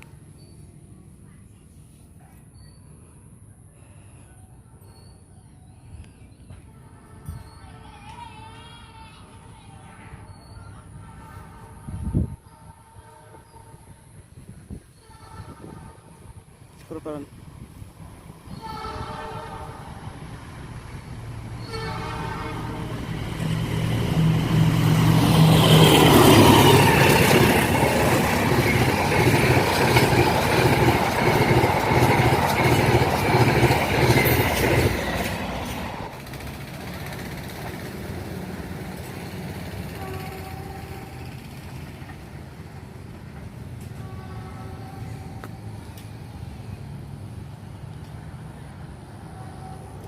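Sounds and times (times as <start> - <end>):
locomotive engine rumbling: 10.2 - 50.0
locomotive horn: 10.9 - 13.9, 14.9 - 16.4, 18.5 - 20.4, 21.5 - 31.5, 39.9 - 41.6, 43.8 - 45.9
wheels clacking over rail joints: 21.5 - 44.6.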